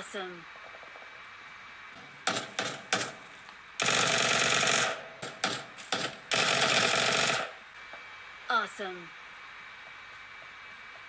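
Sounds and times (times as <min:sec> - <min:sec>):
automatic gunfire bursts: 0:02.2 - 0:03.2, 0:03.8 - 0:07.6.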